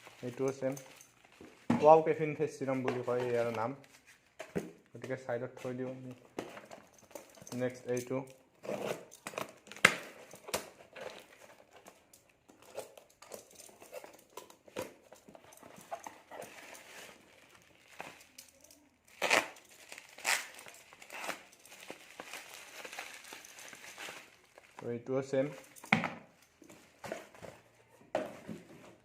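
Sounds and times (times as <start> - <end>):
plastic packaging crinkling: 15.8 - 24.9
plastic ripping: 17.1 - 24.8.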